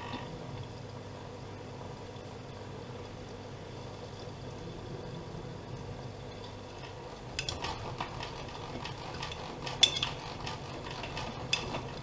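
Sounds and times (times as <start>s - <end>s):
washing machine motor hum: 0.0s - 12.0s
metallic clinks and clicks: 7.4s - 7.9s, 8.8s - 12.0s.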